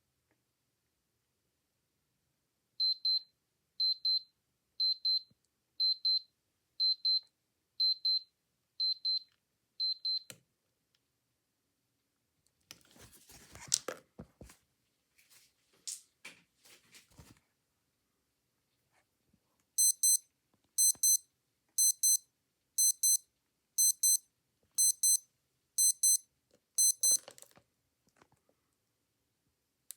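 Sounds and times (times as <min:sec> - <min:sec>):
watch alarm double beeps: 0:19.8 - 0:20.2, 0:20.8 - 0:21.2, 0:21.8 - 0:22.2, 0:22.8 - 0:23.2, 0:23.8 - 0:24.2, 0:24.8 - 0:25.2, 0:25.8 - 0:26.2, 0:26.8 - 0:27.2.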